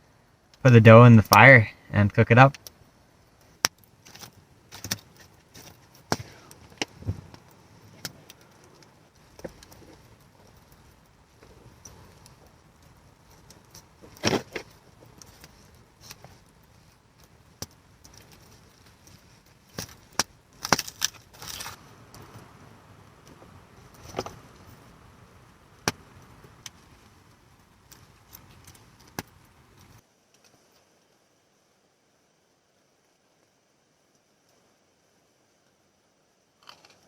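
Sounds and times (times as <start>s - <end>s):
faint hiss: 0.0s - 36.6s
campfire crackling and popping: 0.5s - 30.0s.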